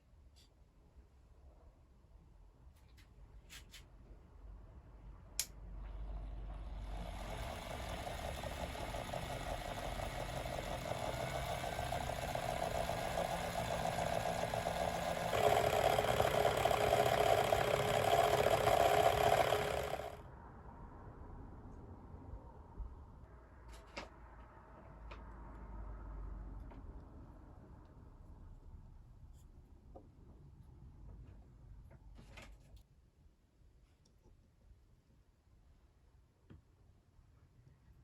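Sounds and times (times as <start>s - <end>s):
small electric motor running: 6.6s - 20.2s.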